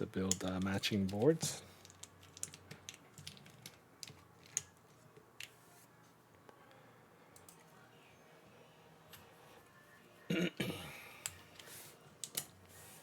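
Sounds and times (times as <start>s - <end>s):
plastic keyboard parts clicking: 0.3s - 4.8s.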